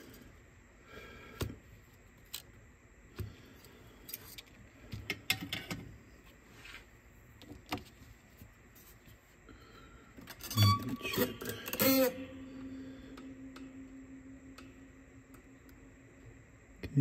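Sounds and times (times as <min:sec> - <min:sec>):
small parts and tools clicking: 0:02.2 - 0:02.6, 0:10.2 - 0:12.2.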